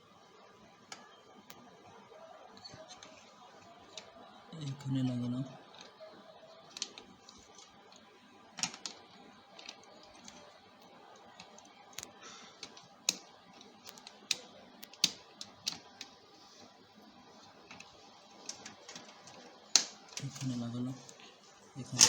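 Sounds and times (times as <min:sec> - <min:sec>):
cable connectors clicking into ports: 0:06.6 - 0:10.6, 0:11.2 - 0:16.2, 0:17.7 - 0:20.6.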